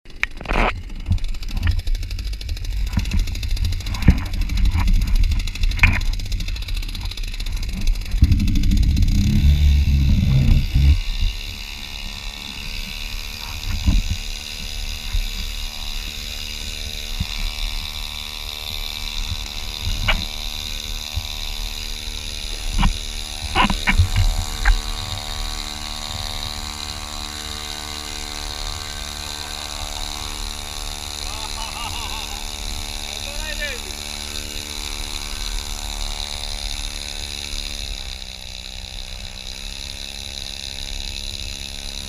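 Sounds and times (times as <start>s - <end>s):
motor running steadily: 0.1s - 42.0s
heavy low rumble: 7.6s - 11.3s.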